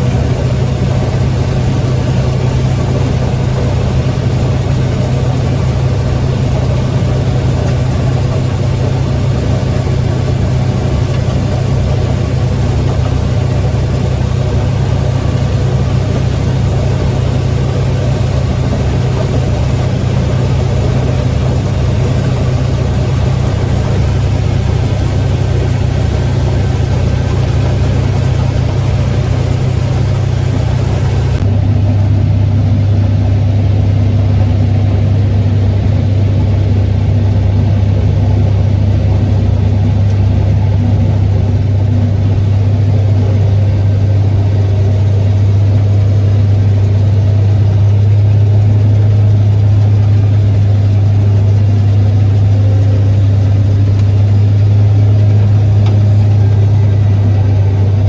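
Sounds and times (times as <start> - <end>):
farm machine engine droning: 0.0 - 58.0.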